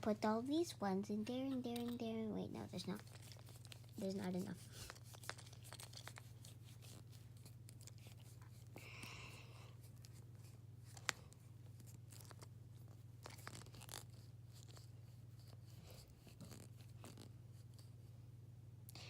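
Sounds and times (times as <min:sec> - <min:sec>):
steady low hum: 0:00.0 - 0:19.0
egg shell crinkling and cracking: 0:03.0 - 0:09.2, 0:10.9 - 0:14.8.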